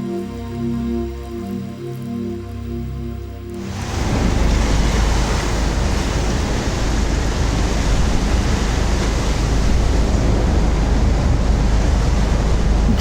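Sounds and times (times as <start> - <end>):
rushing water: 0.0 - 13.0
heavy low rumble: 3.4 - 13.0
rushing wind: 3.6 - 13.0.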